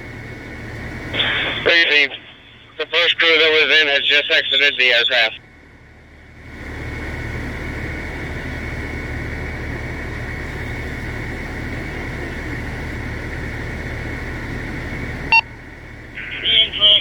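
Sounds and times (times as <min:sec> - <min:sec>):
mechanical rumble: 0:00.0 - 0:17.0
radio channel hiss: 0:01.1 - 0:05.4, 0:16.1 - 0:17.0.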